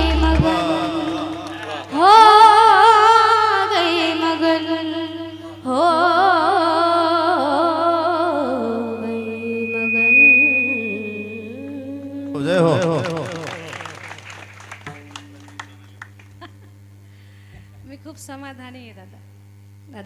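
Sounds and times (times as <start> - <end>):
low drone: 0.0 - 1.9, 7.7 - 13.6
woman singing: 0.0 - 12.4.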